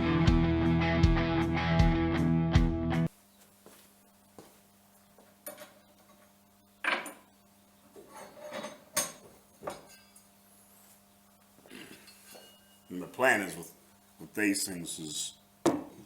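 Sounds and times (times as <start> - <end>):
faint electrical hum: 3.1 - 16.0.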